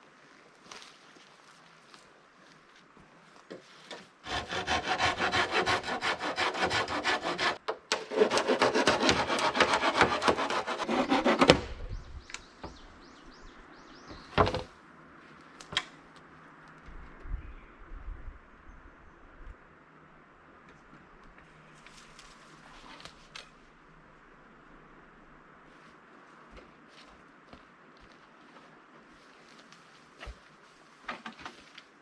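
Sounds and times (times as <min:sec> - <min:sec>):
hand saw cutting wood: 0:04.2 - 0:11.9
wooden knocks: 0:14.1 - 0:14.7.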